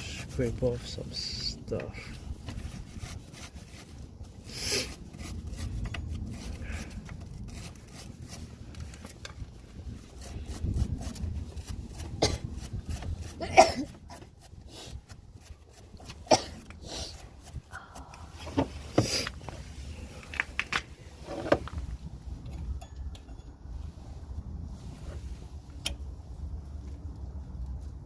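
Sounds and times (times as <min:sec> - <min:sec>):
wire brush scraping metal: 0:02.0 - 0:09.2.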